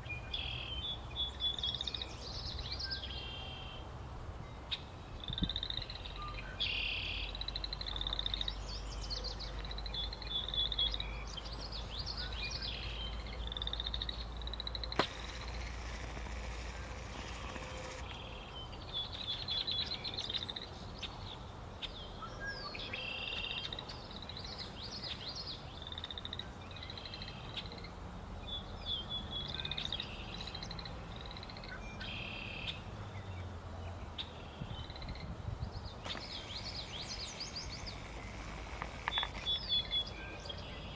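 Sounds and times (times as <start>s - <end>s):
birds singing and calling: 4.5s - 40.9s
sharp click: 14.9s - 18.2s, 36.0s - 39.6s
hiss: 15.0s - 18.0s, 36.1s - 39.5s.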